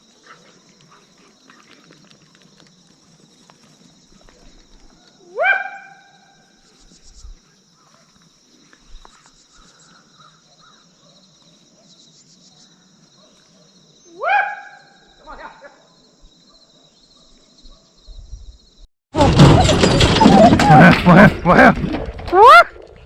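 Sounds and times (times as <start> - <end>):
dog barking: 5.3 - 6.1, 13.2 - 15.0, 16.4 - 18.0.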